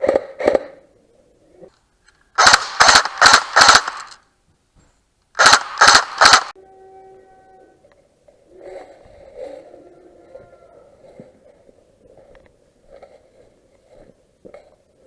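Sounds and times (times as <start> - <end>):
airsoft gun shots: 2.4 - 4.2, 5.4 - 6.6.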